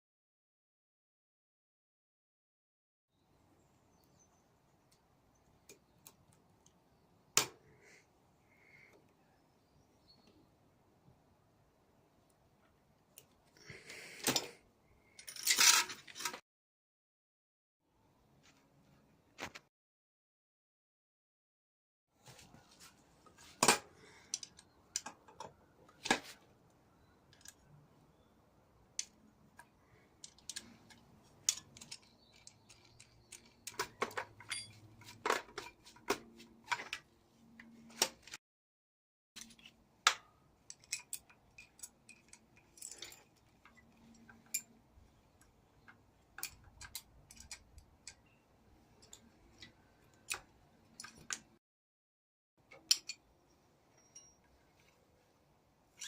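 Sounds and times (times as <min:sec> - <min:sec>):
hand tools and metal parts clinking: 0:13.7 - 0:16.4, 0:29.0 - 0:38.4, 0:39.4 - 0:51.6, 0:52.6 - 0:55.0.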